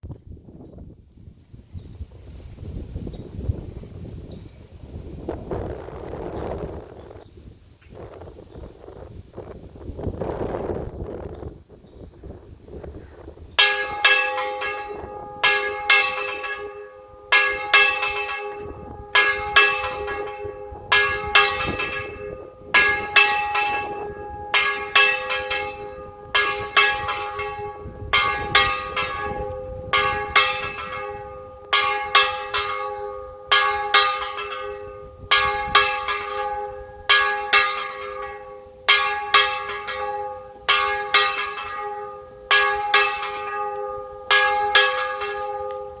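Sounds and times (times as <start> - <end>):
church bell ringing: 13.6 - 46.0.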